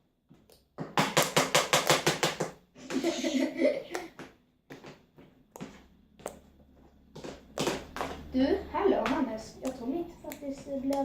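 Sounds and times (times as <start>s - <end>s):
child laughing: 2.8s - 4.2s.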